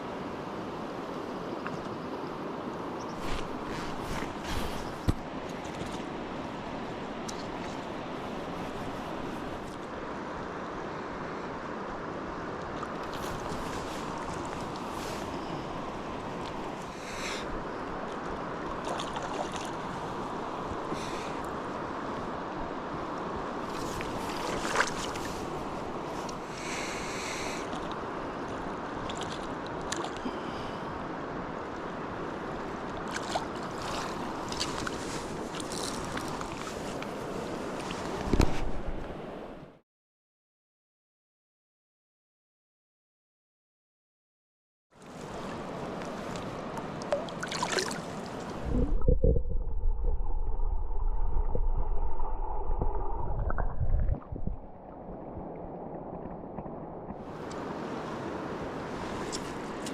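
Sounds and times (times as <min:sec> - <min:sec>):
river water rushing: 0:45.2 - 0:53.7
muffled low rumble of water: 0:45.2 - 0:57.5.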